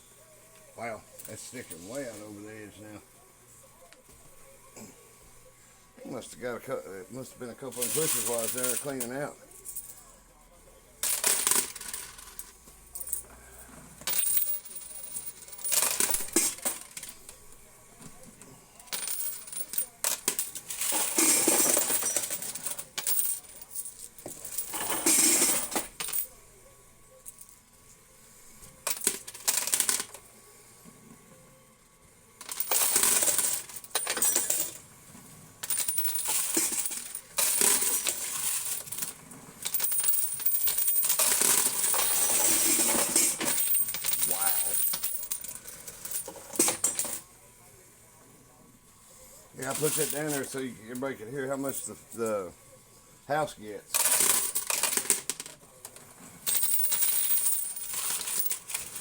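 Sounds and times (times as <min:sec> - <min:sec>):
coins clattering in a machine: 0:01.1 - 0:02.6, 0:07.6 - 0:10.1, 0:11.0 - 0:17.5, 0:18.8 - 0:26.4, 0:28.8 - 0:30.3, 0:32.4 - 0:34.8, 0:35.6 - 0:47.3, 0:49.6 - 0:52.3, 0:53.9 - 0:59.0.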